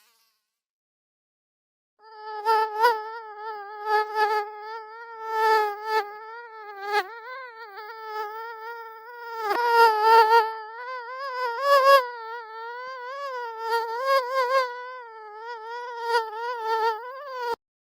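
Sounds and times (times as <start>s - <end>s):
mosquito wings whining: 2.0s - 17.6s.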